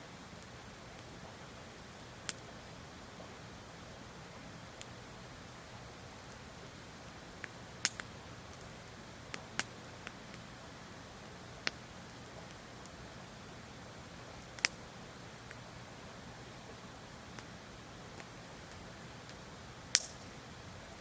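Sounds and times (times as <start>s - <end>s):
faint steady hiss: 0.0s - 21.0s
wood fire crackling: 0.0s - 21.0s
sharp fire pops: 19.3s - 20.3s.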